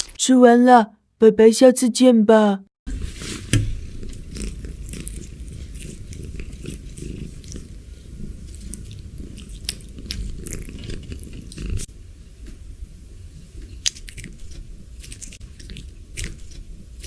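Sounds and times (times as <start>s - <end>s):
cat crunching food: 3.6s - 11.9s, 13.7s - 17.0s.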